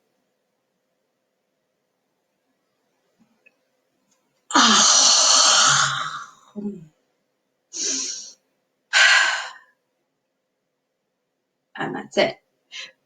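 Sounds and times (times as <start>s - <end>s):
person yawning loudly: 4.5s - 6.8s.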